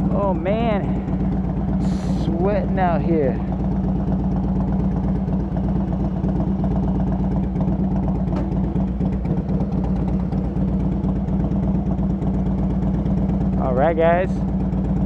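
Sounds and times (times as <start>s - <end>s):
motorcycle engine idling: 0.0s - 15.0s.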